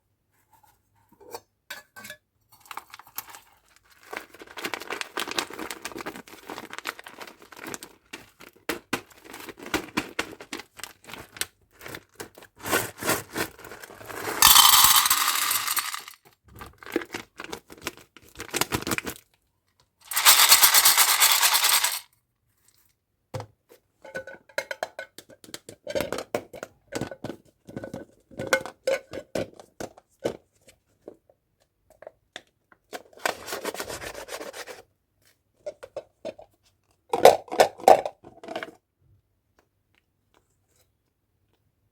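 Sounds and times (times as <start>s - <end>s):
packaging rustling: 3.9s - 8.5s, 20.1s - 22.0s.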